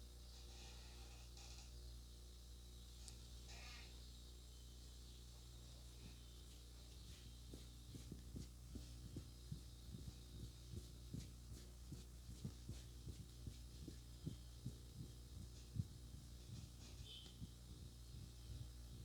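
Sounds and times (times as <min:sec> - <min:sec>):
low hum: 0:02.9 - 0:19.0
muffled hand taps on head: 0:07.0 - 0:17.6.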